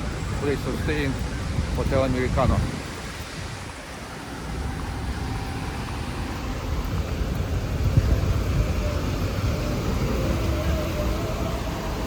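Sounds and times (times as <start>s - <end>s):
passing cars rumbling: 3.6s - 12.0s.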